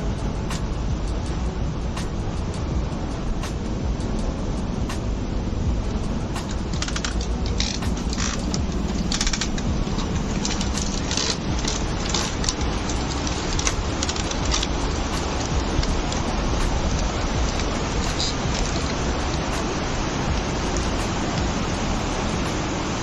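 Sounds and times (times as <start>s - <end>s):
waterfall rushing: 0.0s - 23.0s
sharp clicks: 5.9s - 21.6s.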